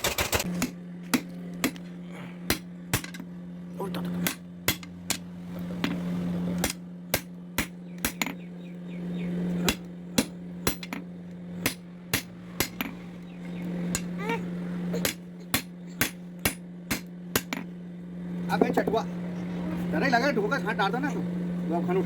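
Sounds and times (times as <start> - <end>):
low hum: 0.0 - 22.0
hammer striking steel on anvil: 0.6 - 3.3, 4.2 - 5.2, 6.6 - 8.4, 9.6 - 11.0, 11.6 - 13.0, 15.0 - 17.7.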